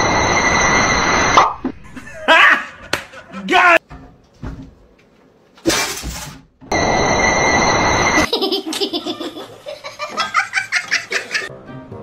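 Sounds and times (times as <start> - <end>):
loud hissing with whistle tones: 0.0 - 1.4, 6.7 - 8.3
person laughing: 1.8 - 3.6, 8.2 - 11.5.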